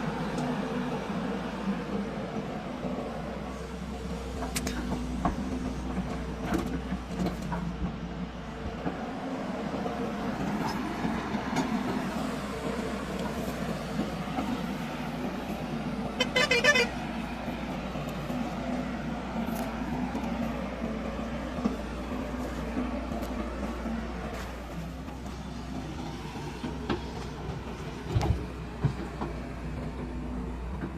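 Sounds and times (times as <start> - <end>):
heavy diesel machinery running: 0.0 - 30.9
pulsing vehicle horn: 16.1 - 17.2.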